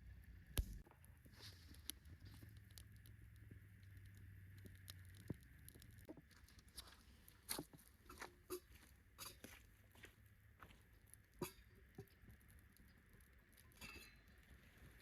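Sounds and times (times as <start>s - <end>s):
campfire crackling: 0.0s - 15.0s
fire snaps and pops: 0.4s - 9.4s.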